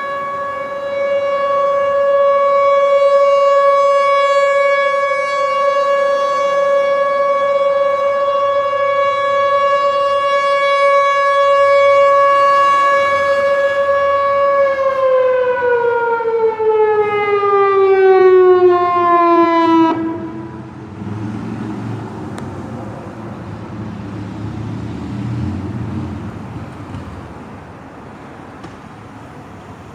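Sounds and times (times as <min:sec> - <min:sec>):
warning siren winding down: 0:00.0 - 0:22.0.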